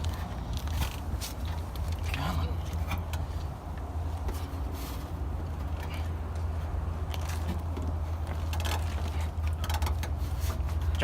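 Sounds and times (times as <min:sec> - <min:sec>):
parts scraping and clicking: 0:00.0 - 0:11.0.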